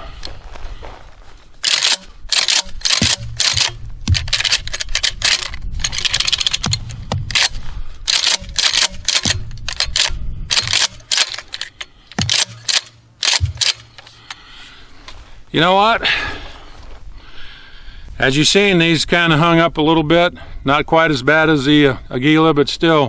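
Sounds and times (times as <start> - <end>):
shells ejecting: 1.6 - 14.4
shotgun slide clacking: 1.6 - 14.4.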